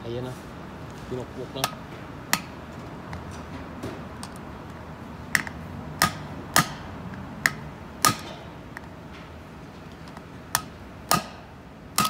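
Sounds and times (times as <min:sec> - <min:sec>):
hammer striking metal: 0:01.6 - 0:02.6, 0:05.4 - 0:08.5, 0:10.6 - 0:12.0.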